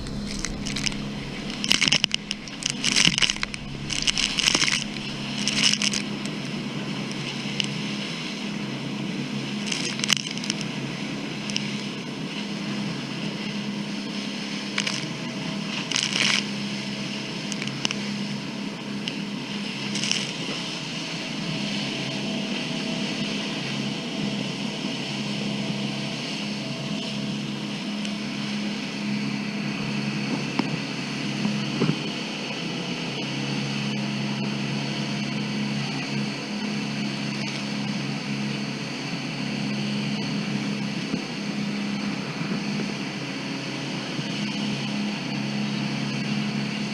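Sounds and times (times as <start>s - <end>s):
spray rushing: 0.0s - 6.5s
boat engine running: 0.0s - 46.9s
water and wind rushing: 0.0s - 46.9s.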